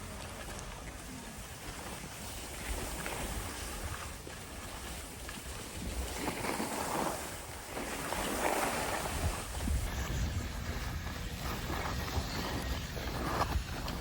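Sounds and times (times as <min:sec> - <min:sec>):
low rumble: 0:09.6 - 0:14.0.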